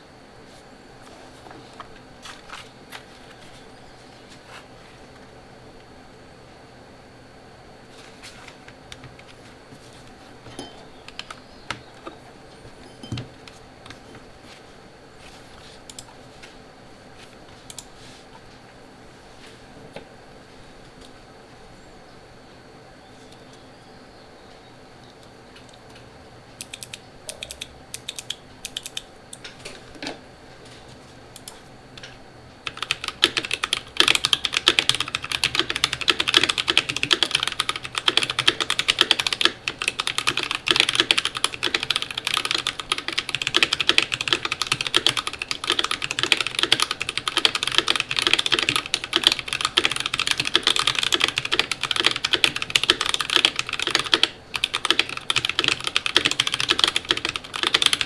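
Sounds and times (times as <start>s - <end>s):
mechanical keyboard typing: 11.0s - 12.0s, 26.6s - 29.1s, 31.4s - 58.0s.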